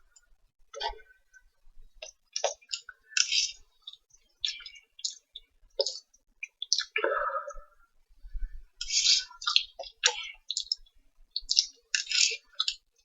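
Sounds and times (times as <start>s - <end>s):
eating clicks and slurps: 2.0s - 5.2s, 5.8s - 7.0s, 8.8s - 12.9s.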